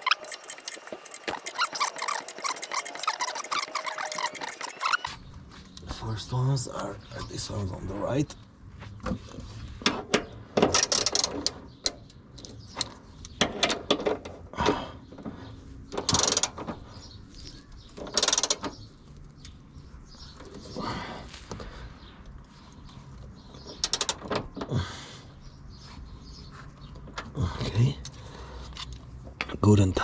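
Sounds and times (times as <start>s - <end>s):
ratchet wrench clicking: 0.0s - 5.1s.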